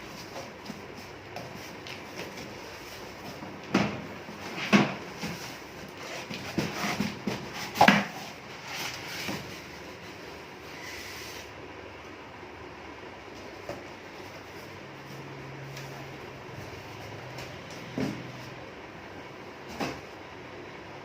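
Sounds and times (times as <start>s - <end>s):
computer case knocks and clatter: 3.6s - 5.5s.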